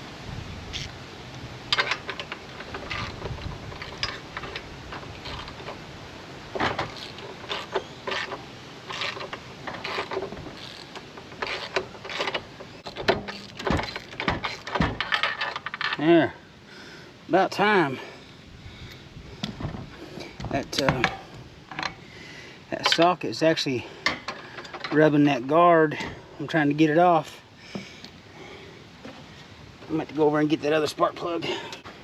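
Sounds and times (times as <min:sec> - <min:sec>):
ratchet clicking and scraping: 0:01.7 - 0:05.9, 0:06.5 - 0:16.0.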